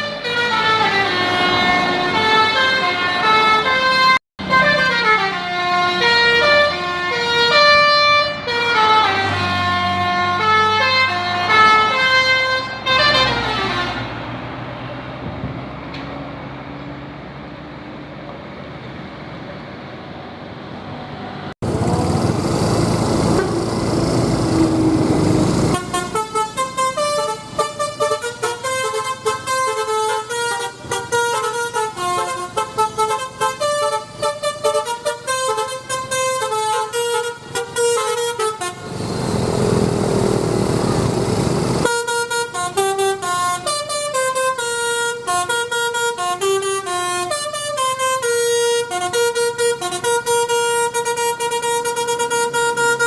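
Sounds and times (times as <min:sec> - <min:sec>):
multi-tone bus horn melody: 0:00.0 - 0:14.4, 0:23.2 - 0:39.7, 0:41.7 - 0:53.0
loud rushing noise: 0:38.8 - 0:41.9.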